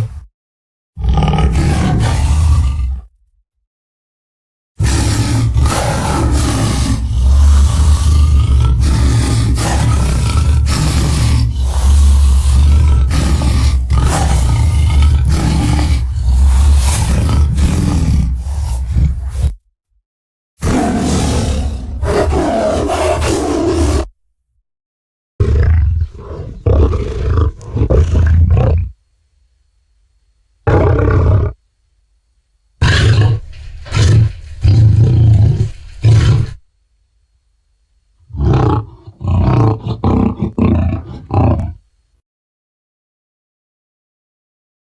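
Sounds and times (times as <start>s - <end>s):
deep monster roars: 1.0s - 3.1s, 4.8s - 19.6s, 20.6s - 24.1s, 32.8s - 36.6s, 38.3s - 41.8s.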